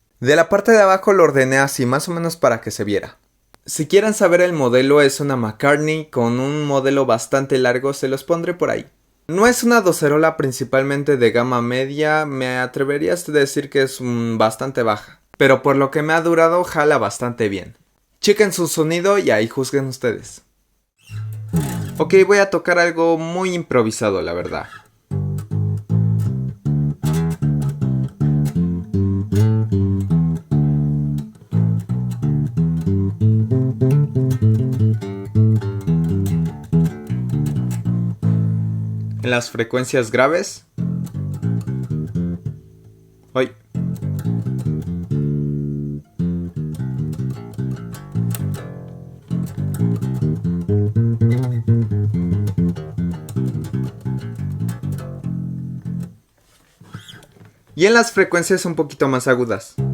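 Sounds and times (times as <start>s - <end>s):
plucked bass line: 21.1s - 22.2s, 25.1s - 39.3s, 40.7s - 43.1s, 43.7s - 56.2s.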